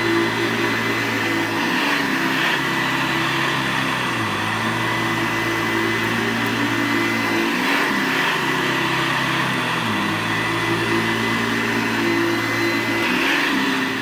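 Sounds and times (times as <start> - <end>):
vacuum cleaner running: 0.0 - 14.0.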